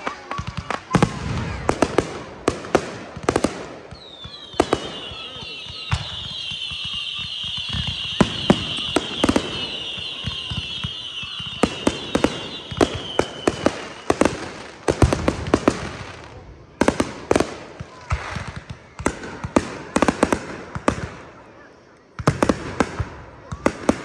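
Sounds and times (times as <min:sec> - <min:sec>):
firework bangs: 0:00.0 - 0:24.0
shrill firework whistling: 0:03.9 - 0:16.2.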